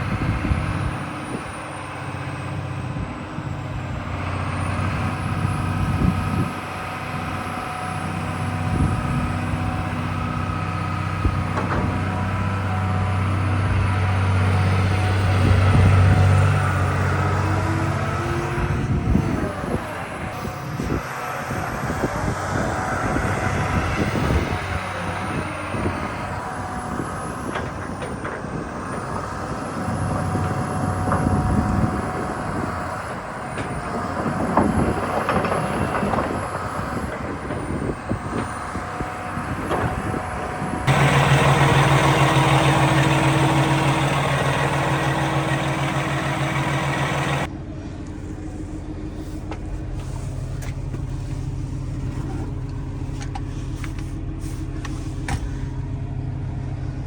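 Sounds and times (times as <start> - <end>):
excavator diesel engine running: 0.0 - 57.0
knocks and clanks: 11.4 - 12.5.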